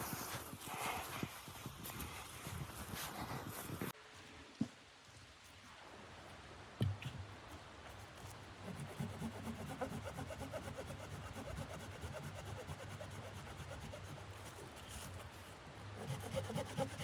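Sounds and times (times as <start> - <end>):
hand saw cutting wood: 8.7 - 14.0, 16.0 - 17.0.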